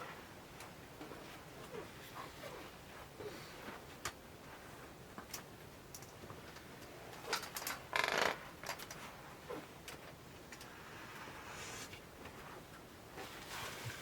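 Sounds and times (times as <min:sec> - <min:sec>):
rustle: 0:06.1 - 0:14.0.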